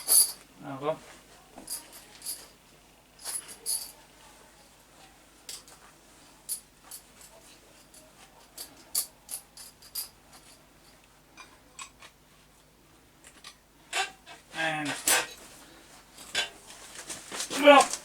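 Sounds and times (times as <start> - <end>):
metallic clinks and taps: 6.5 - 12.2.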